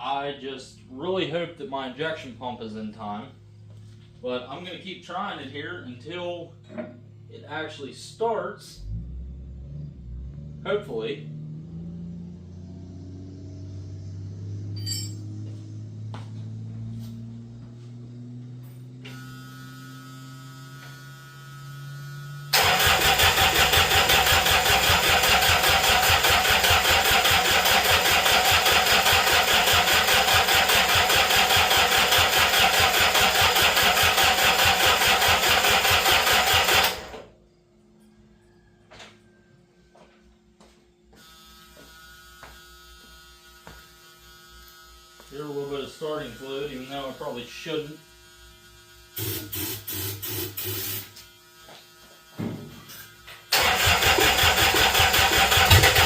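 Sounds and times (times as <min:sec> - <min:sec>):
diesel engine cranking on starter: 0:22.5 - 0:37.3, 0:53.5 - 0:56.0.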